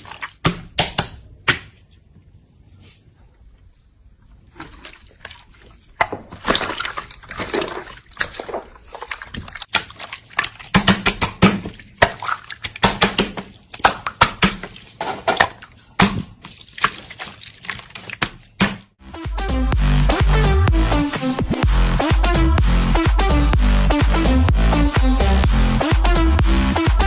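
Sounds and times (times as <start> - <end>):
slime squelching by hand: 0.0 - 19.0.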